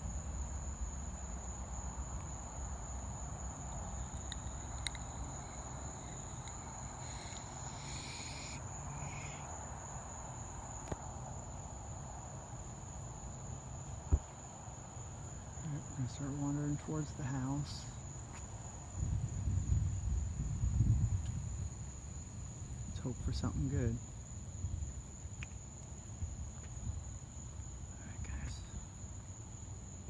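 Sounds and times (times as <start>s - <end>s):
crickets trilling: 0.0s - 30.0s.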